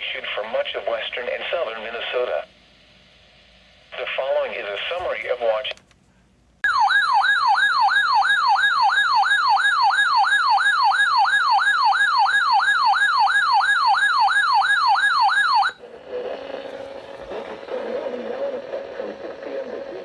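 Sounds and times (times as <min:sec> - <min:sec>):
warbling electronic siren tone: 0:06.6 - 0:15.8.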